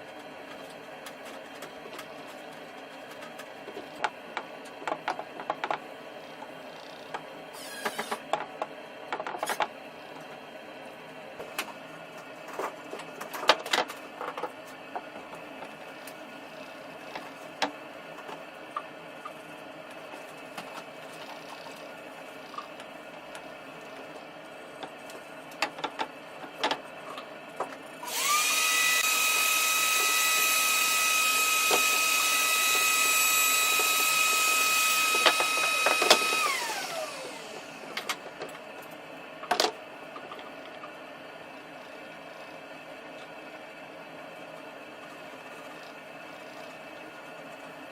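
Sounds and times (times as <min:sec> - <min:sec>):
power tool motor whining: 0:07.6 - 0:08.2, 0:28.0 - 0:37.9.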